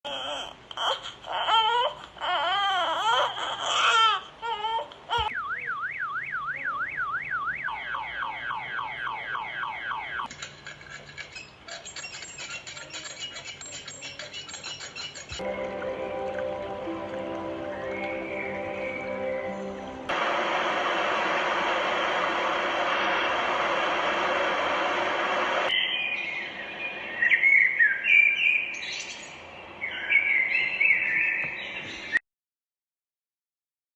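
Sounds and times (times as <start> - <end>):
car alarm siren: 5.3 - 10.3
birds chirping and singing: 11.1 - 20.1, 25.7 - 32.2.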